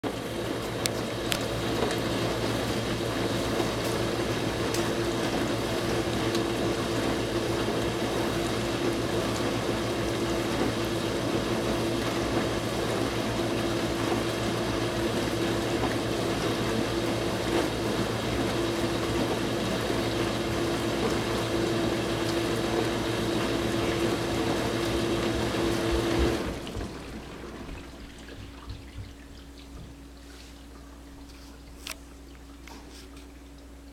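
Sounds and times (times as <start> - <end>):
dishwasher pump humming: 0.0 - 33.9
water spraying and sloshing: 0.9 - 33.8
water dripping: 25.7 - 33.8.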